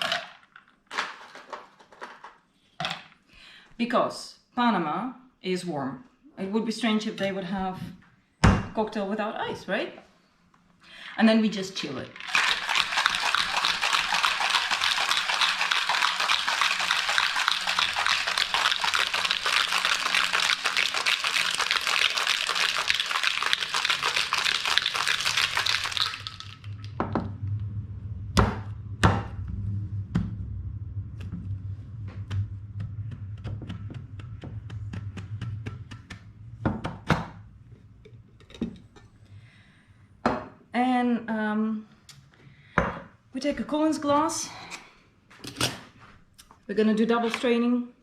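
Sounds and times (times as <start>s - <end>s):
cocktail shaker rattling with ice: 11.7s - 27.0s
low hum: 22.7s - 40.2s.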